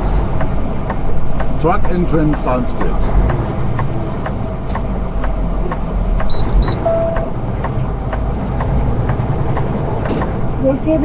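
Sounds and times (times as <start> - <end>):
faint regular ticking: 0.0 - 11.0
truck engine rumble from cab: 0.0 - 11.0
short electronic beep: 6.3 - 7.3.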